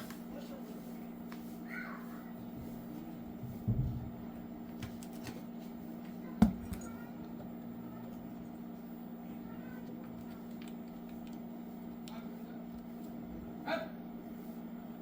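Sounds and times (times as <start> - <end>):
low electrical hum: 0.0 - 15.0
soft bump: 3.4 - 4.2.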